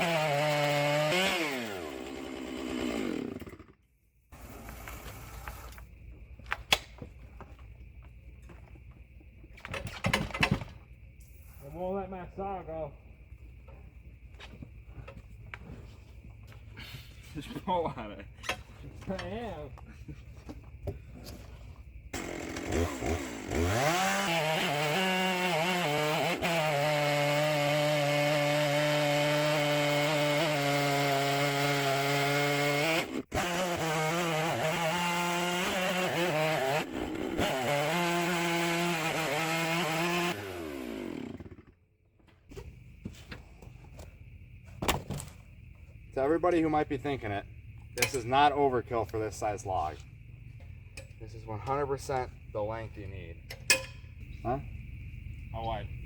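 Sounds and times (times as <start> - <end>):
chainsaw cutting through log: 0.0 - 5.7, 22.2 - 41.8
wooden and metal knocks: 53.5 - 54.1.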